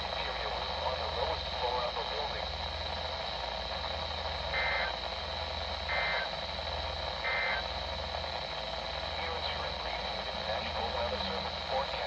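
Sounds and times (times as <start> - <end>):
steady radio hiss: 0.0 - 12.0
digital data tone bursts: 5.9 - 6.3, 7.2 - 7.6.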